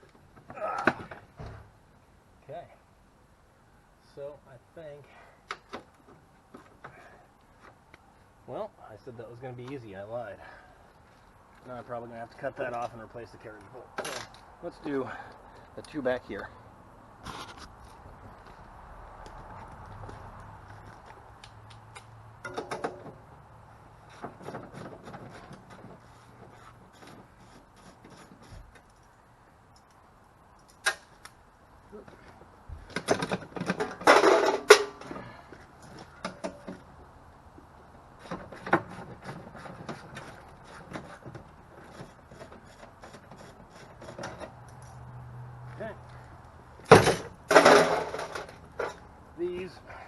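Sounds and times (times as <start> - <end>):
metal clatter: 32.9 - 35.1, 46.9 - 49.0.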